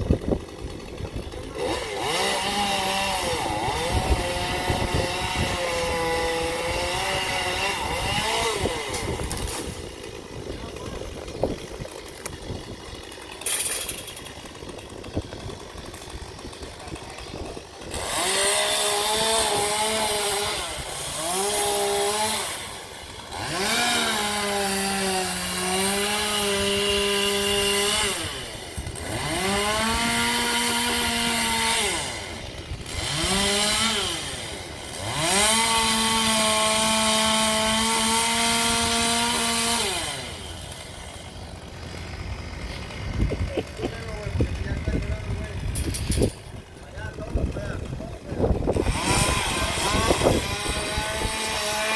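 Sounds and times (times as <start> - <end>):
chainsaw revving and cutting: 0.0 - 51.9.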